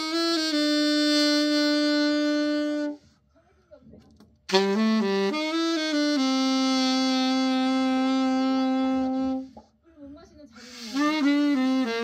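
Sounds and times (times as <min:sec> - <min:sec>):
alto saxophone solo: 0:00.0 - 0:03.1, 0:04.5 - 0:09.6, 0:10.7 - 0:12.0.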